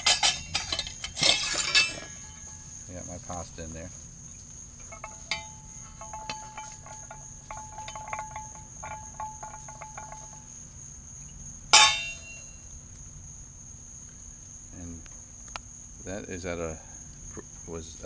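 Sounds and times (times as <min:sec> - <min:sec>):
loud metal clank: 0:00.0 - 0:02.6, 0:11.7 - 0:12.6
metal cookware clinking: 0:00.0 - 0:02.6, 0:04.8 - 0:10.4, 0:11.7 - 0:12.6
insect chirring: 0:00.0 - 0:18.0.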